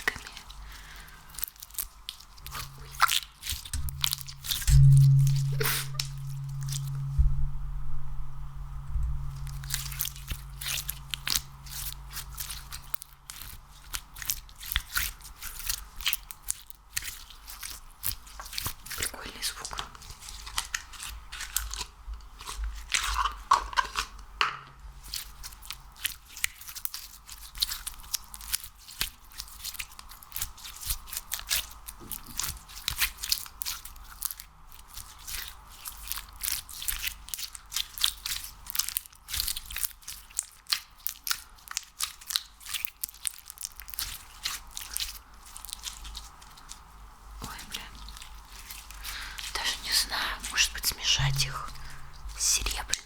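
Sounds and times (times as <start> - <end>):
sticky slime clicks and crackles: 9.4 - 24.2, 25.1 - 46.8.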